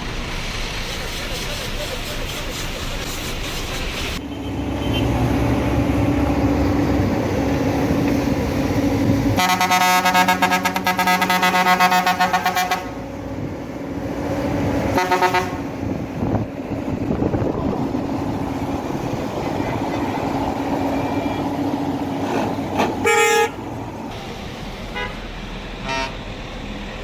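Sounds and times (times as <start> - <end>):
bus engine humming: 0.0 - 27.0
bus horn blast: 4.2 - 5.7, 9.4 - 13.0, 14.9 - 15.8, 22.2 - 23.7, 24.9 - 26.3.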